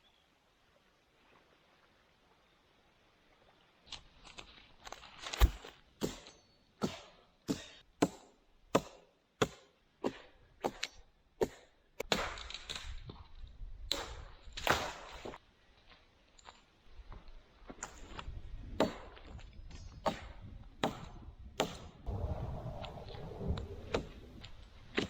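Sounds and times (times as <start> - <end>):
wood chopping blows: 5.2 - 12.8.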